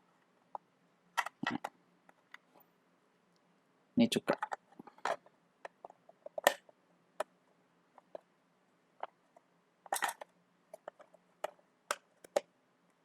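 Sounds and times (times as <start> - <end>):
plastic toy parts clicking: 9.9 - 12.5.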